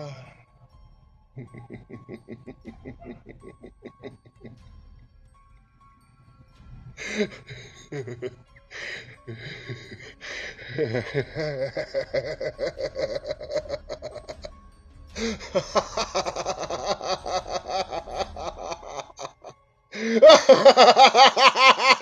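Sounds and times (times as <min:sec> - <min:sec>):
man laughing maniacally: 0:01.4 - 0:04.6, 0:07.0 - 0:14.6, 0:15.2 - 0:22.0.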